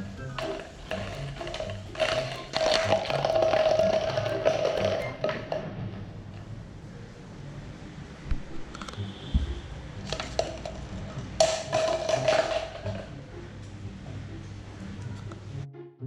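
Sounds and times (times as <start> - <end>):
empty jar tapping and knocking: 0.3 - 5.6, 11.4 - 13.1.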